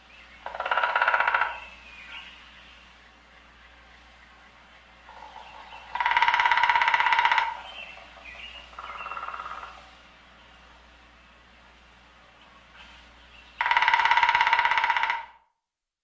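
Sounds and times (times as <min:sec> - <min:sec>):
faint bird chirps: 0:00.0 - 0:09.8
woodpecker drumming on wood: 0:00.4 - 0:02.2, 0:05.1 - 0:09.8, 0:13.6 - 0:15.5.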